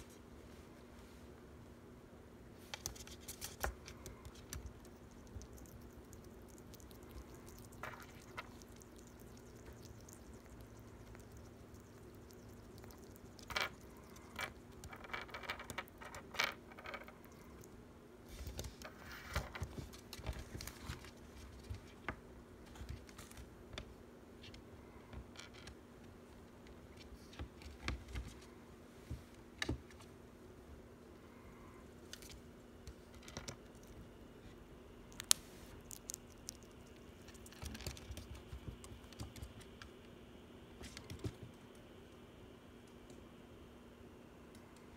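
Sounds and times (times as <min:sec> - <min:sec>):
small animal eating clicks: 0:02.7 - 0:16.3, 0:35.1 - 0:40.1.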